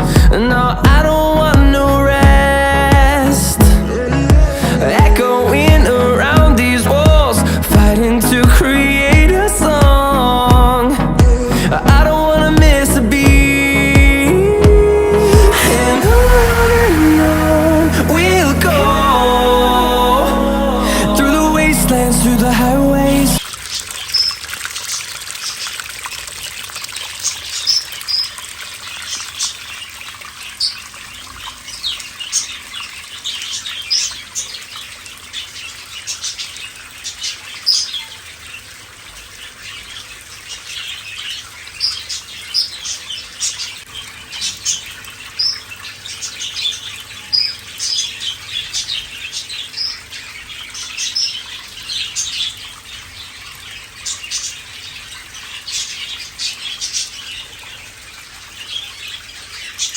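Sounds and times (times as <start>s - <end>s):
waterfall rushing: 0.0s - 23.5s
small birds chirping: 18.0s - 25.8s, 26.4s - 59.9s.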